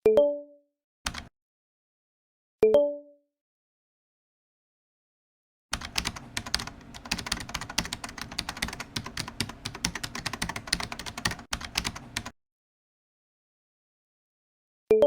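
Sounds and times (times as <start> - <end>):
fast typing on keyboard: 1.1 - 1.3, 5.8 - 12.3.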